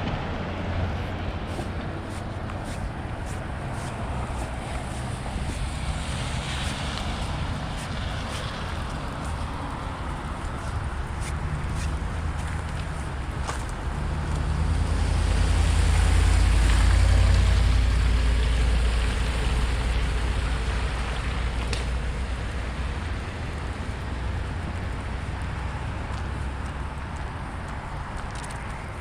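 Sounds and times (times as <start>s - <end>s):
vehicle passing: 0.0s - 21.6s.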